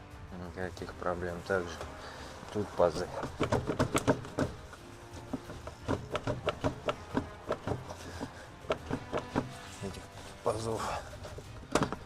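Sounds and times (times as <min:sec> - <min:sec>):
plastic housing clicking and knocking: 0:03.1 - 0:04.6, 0:05.2 - 0:09.6, 0:11.6 - 0:12.0.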